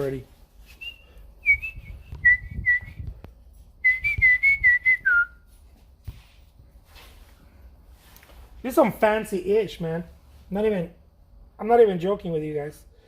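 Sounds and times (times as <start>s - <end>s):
person whistling a tune: 0.7s - 3.2s, 3.8s - 5.5s.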